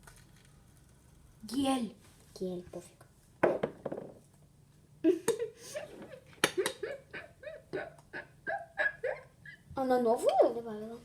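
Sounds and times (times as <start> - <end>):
girl giggling: 5.0 - 9.7.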